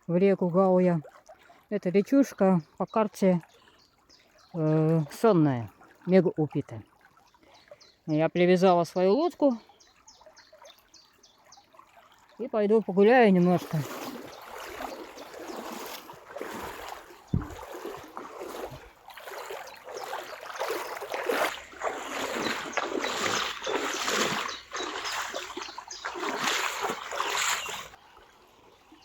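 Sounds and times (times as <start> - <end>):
wading through water: 0.0 - 29.0
low thump: 17.3 - 17.8.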